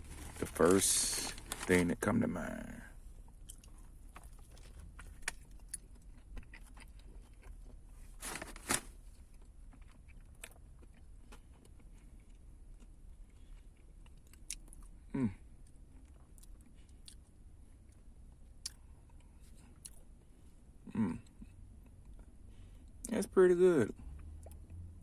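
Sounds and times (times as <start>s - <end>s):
person chewing crunchy food: 3.3s - 8.3s, 9.2s - 18.0s.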